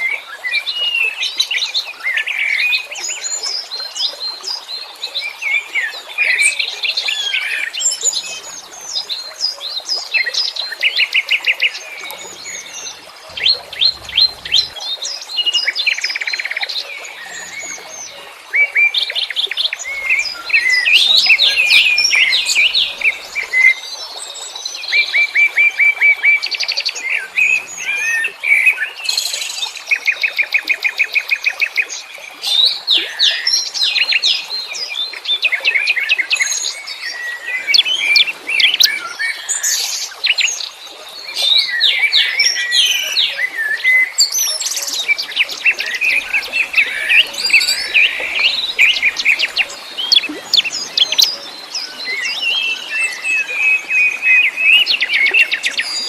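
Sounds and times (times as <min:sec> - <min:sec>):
songbirds chirping and singing: 0:10.6 - 0:15.3, 0:19.7 - 0:23.8, 0:44.2 - 0:56.0
bird trills: 0:12.0 - 0:14.8.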